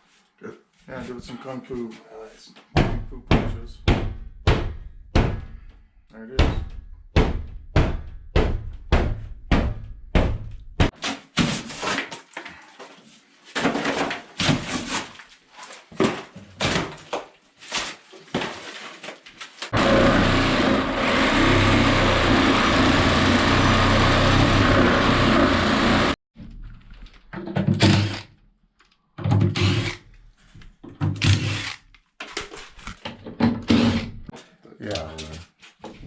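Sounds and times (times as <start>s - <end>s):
knocks and thuds: 2.8s - 5.7s, 6.4s - 11.6s
blows knocking out drywall: 19.8s - 26.2s
power tool running: 19.8s - 26.2s.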